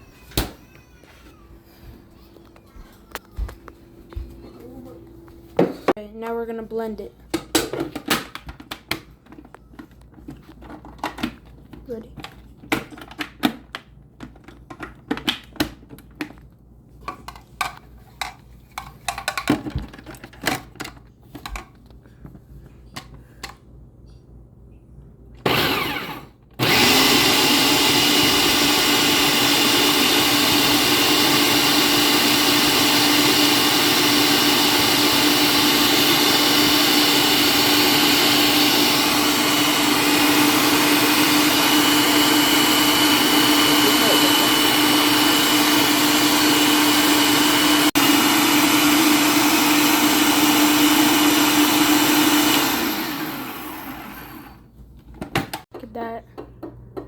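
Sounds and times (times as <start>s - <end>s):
electric blender running: 25.4s - 54.7s.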